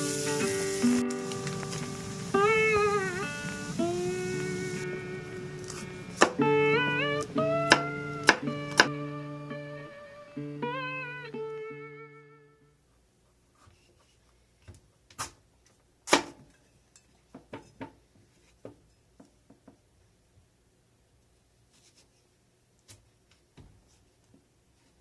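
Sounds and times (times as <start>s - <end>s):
acoustic guitar music: 0.0s - 12.8s.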